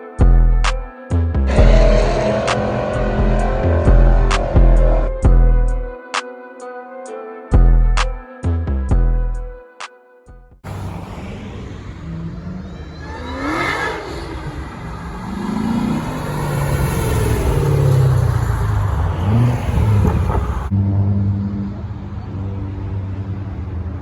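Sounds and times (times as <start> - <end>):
muscle car engines revving: 1.5 - 6.0, 10.7 - 24.0
engine rumbling steadily: 10.7 - 24.0.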